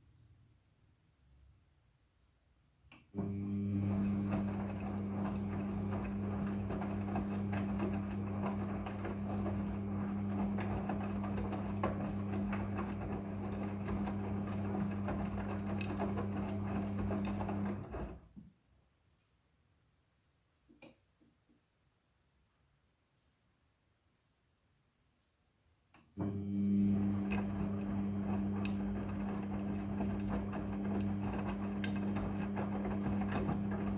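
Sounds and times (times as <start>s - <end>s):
washing machine running: 3.2s - 18.2s, 26.2s - 33.9s.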